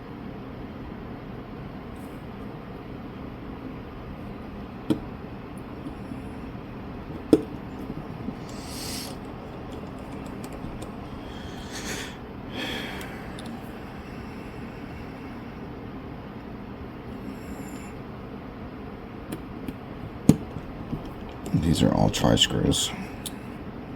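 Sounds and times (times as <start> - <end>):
steady background hum: 0.0 - 23.9
short breaths: 8.3 - 9.2, 11.1 - 15.6.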